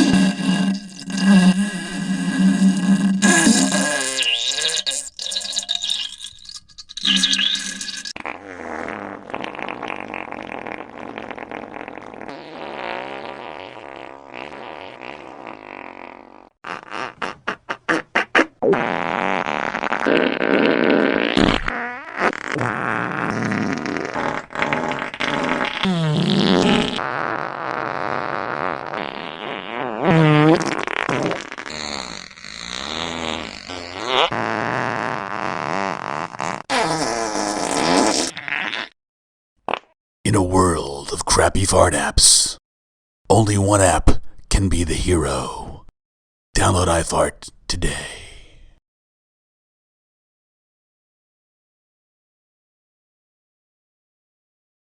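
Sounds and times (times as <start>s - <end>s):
short fart pops: 0.0s - 4.9s, 8.2s - 39.0s, 39.6s - 40.0s
long wobbling fart sound effect: 0.0s - 6.2s, 7.0s - 39.0s, 39.7s - 40.0s.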